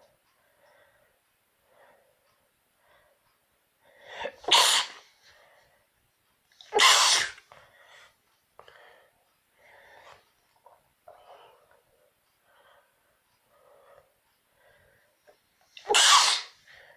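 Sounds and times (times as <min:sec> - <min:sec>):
person sneezing: 0:04.2 - 0:05.1, 0:06.7 - 0:07.4, 0:15.8 - 0:16.6.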